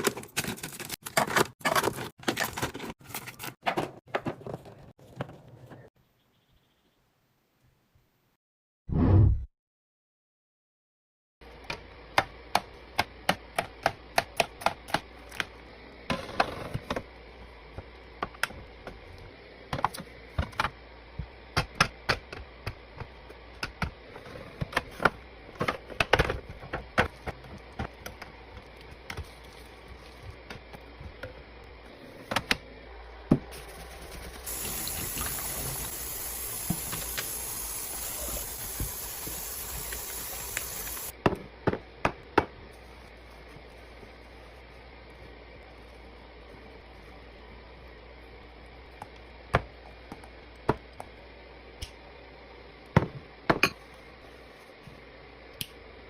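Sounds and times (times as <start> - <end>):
steady rushing hiss: 33.6 - 41.1.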